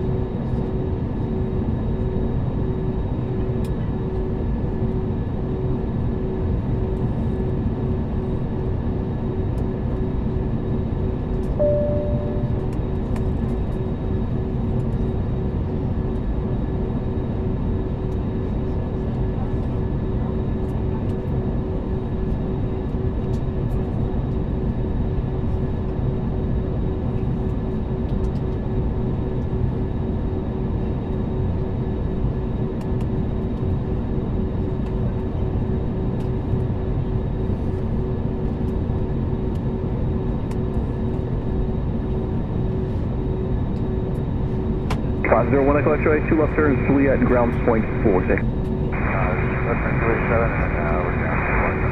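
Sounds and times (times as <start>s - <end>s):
idling jet engines rumble: 0.0s - 51.9s
short single tone: 11.6s - 12.8s
air-conditioning hum: 45.0s - 51.9s.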